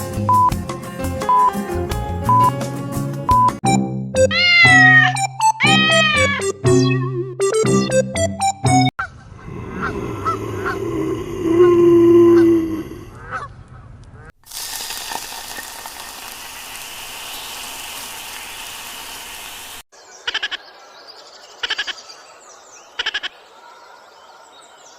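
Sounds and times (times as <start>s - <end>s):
small birds chirping: 19.9s - 24.9s.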